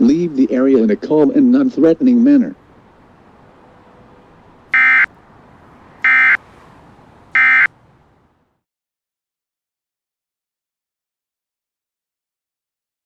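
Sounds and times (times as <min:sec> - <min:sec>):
short digital data bursts: 0:04.7 - 0:05.1, 0:06.0 - 0:06.4, 0:07.4 - 0:07.7.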